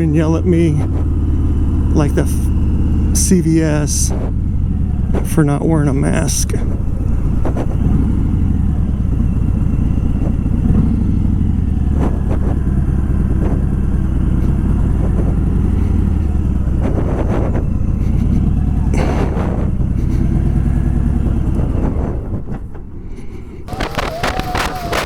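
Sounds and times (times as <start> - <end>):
motorcycle engine running: 0.0 - 25.0
brief rush of noise: 23.7 - 25.0.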